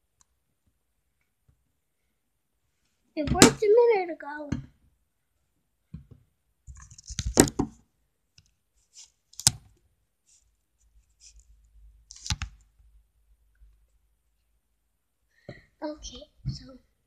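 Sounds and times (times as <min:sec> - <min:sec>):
objects being handled: 0:06.0 - 0:07.8.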